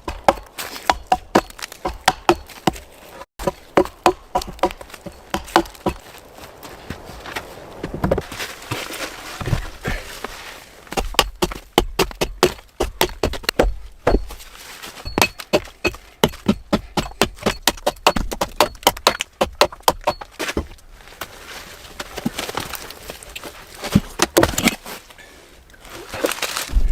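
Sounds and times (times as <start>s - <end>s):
sharp knocks and cracks: 0.0s - 6.0s, 10.9s - 14.4s, 23.9s - 24.8s.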